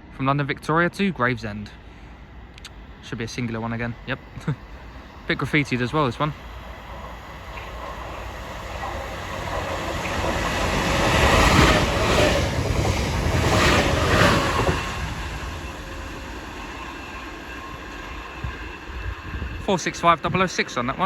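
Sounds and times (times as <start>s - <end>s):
electric train passing: 0.7s - 21.0s
train wheels clattering on track: 5.8s - 21.0s.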